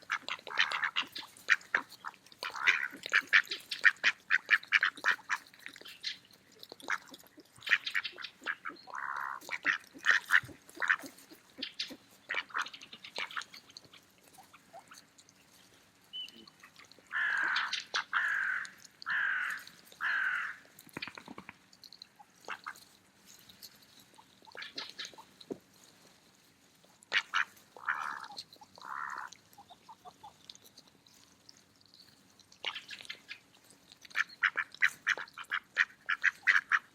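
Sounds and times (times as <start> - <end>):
ducks quacking: 0.0 - 13.6, 16.3 - 21.2, 22.2 - 22.8, 24.4 - 25.3, 27.1 - 30.4, 34.1 - 36.9.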